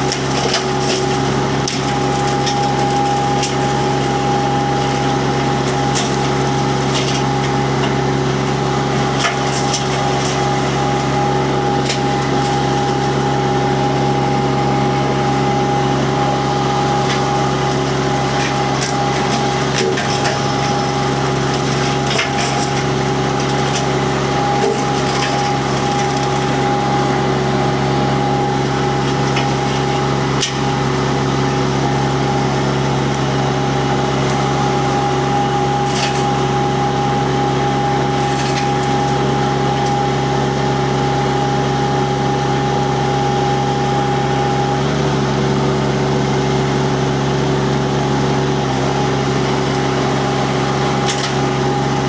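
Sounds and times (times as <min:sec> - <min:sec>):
disc cracking wood: 0:00.0 - 0:13.4, 0:16.7 - 0:26.8, 0:28.4 - 0:31.2, 0:35.8 - 0:36.5, 0:38.1 - 0:40.1, 0:50.8 - 0:51.8
mulcher high whine: 0:00.0 - 0:46.2
engine drone: 0:00.0 - 0:52.0.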